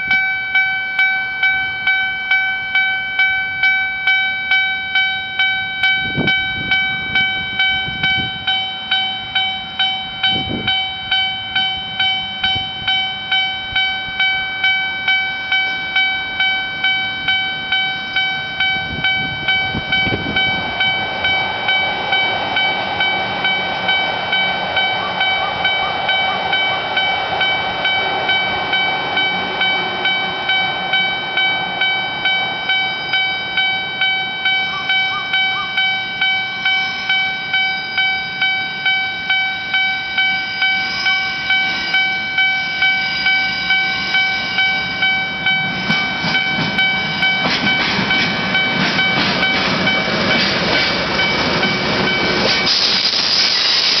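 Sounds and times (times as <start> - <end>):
level crossing warning bell dinging: 0.0 - 53.2
train passing over crossing: 0.0 - 54.0.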